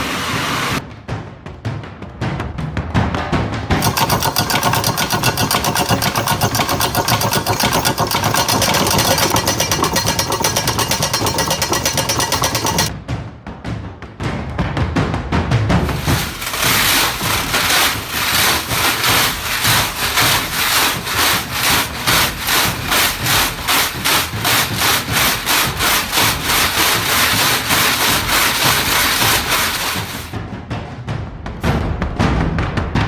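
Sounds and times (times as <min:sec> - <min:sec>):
rhythmic rasping strokes: 0:03.8 - 0:12.9, 0:15.8 - 0:30.4.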